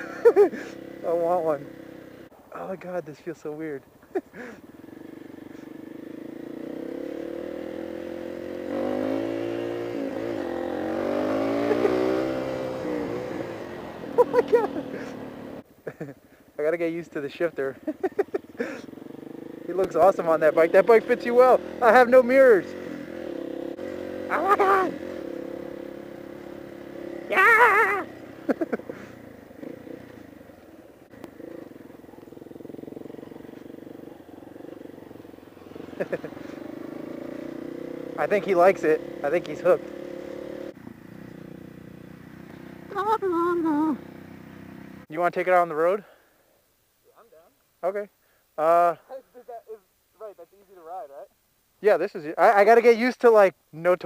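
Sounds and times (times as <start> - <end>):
motorcycle engine running: 0.0 - 2.3, 4.3 - 15.7, 17.0 - 45.1.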